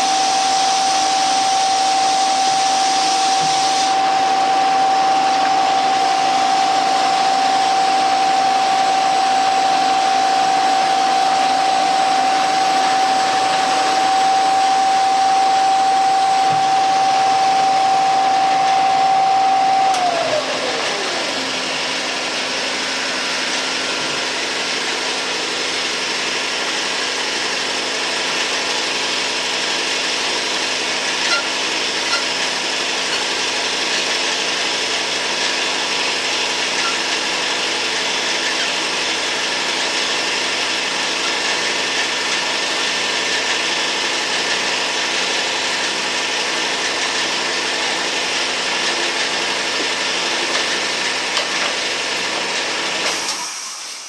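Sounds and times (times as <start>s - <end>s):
cutter hissing on metal: 0.0s - 5.7s, 53.0s - 54.0s
milling machine motor hum: 0.0s - 54.0s.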